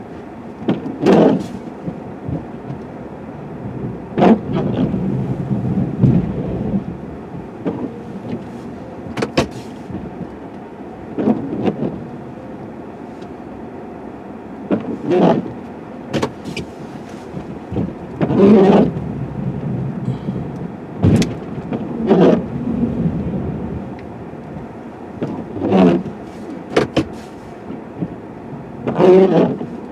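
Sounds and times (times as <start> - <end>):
plow knocks and clanks: 0.6 - 2.9, 7.6 - 10.3, 16.1 - 19.0, 20.1 - 22.4, 24.6 - 27.5.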